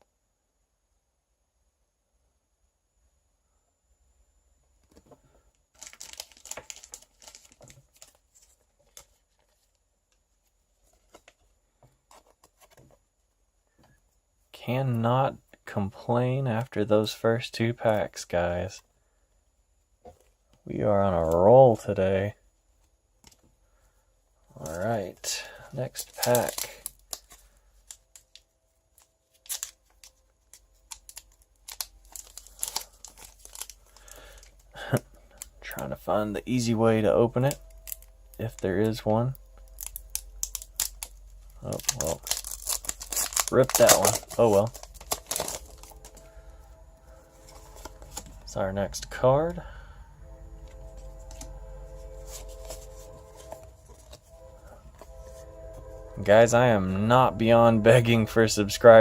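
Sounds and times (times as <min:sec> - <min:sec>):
foil wrapper crinkling: 0:05.7 - 0:09.7, 0:23.8 - 0:49.1
cards being handled: 0:05.8 - 0:09.7, 0:10.8 - 0:13.0, 0:24.5 - 0:35.6, 0:37.3 - 0:48.5, 0:50.6 - 0:55.5.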